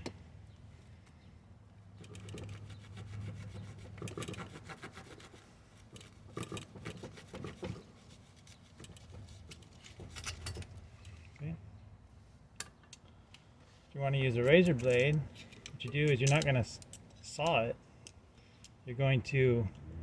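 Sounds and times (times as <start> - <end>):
knife sawing through hose: 2.2 - 6.2.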